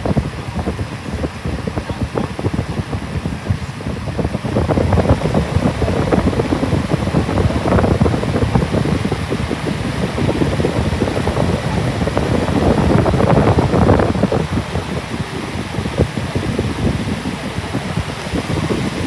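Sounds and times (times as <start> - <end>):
box fan airflow buffeting microphone: 0.0 - 19.0.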